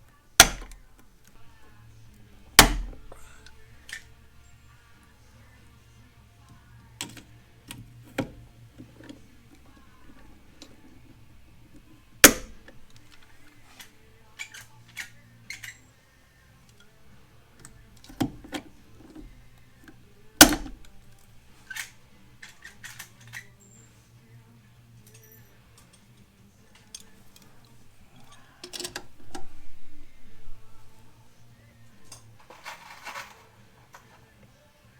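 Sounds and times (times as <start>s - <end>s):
rivet mandrels snapping: 0.4s - 4.2s, 6.9s - 15.9s, 16.6s - 23.6s, 25.1s - 31.2s
rivet gun clicking: 20.4s - 21.0s.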